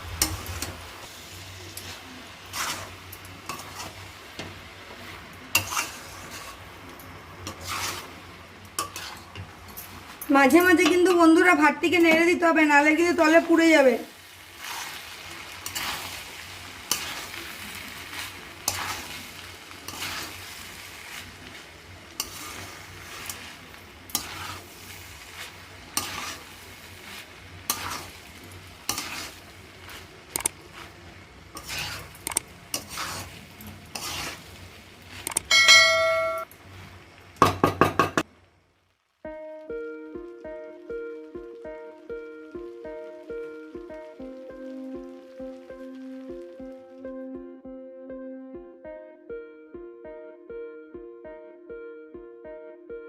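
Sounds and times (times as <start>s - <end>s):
low sizzle: 0.0s - 47.6s
spatula scraping frying pan: 1.8s - 4.1s, 5.5s - 6.7s, 7.4s - 8.2s, 8.8s - 10.0s, 14.5s - 36.4s
metal ding: 35.5s - 36.4s.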